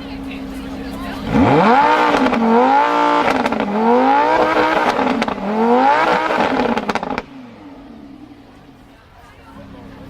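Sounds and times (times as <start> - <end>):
car engine revving: 0.1 - 8.9
exhaust crackles and pops: 1.2 - 7.7.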